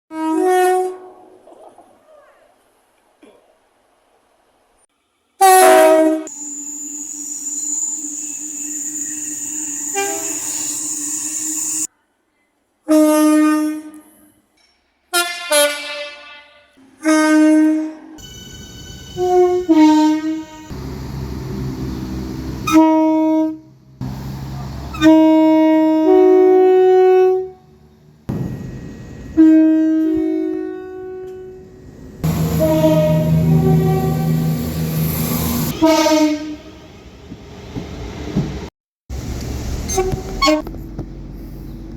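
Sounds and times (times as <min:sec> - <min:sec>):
train horn blasts: 0:00.1 - 0:01.3, 0:05.4 - 0:11.9, 0:12.9 - 0:14.2, 0:15.1 - 0:20.9, 0:22.6 - 0:23.8, 0:24.9 - 0:34.9, 0:35.5 - 0:36.9, 0:39.9 - 0:40.7.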